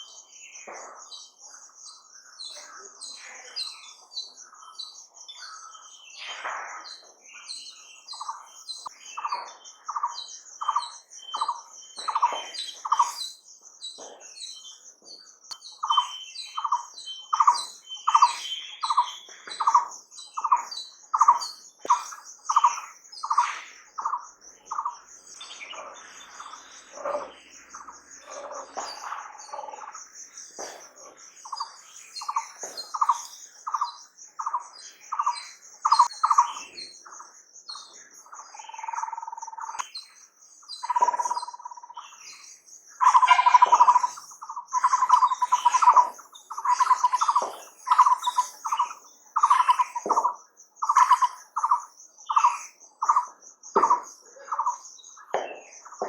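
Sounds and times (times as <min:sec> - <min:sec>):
high fast-pulsing bird trill: 0:40.7 - 0:56.0
bird repeating mid-pitched notes: 0:40.8 - 0:42.2, 0:43.0 - 0:54.8.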